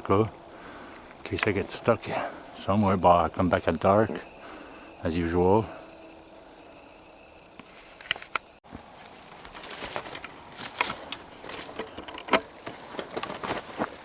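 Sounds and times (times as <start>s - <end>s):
footsteps crunching on rocky ground: 0.8s - 1.9s, 7.6s - 14.0s.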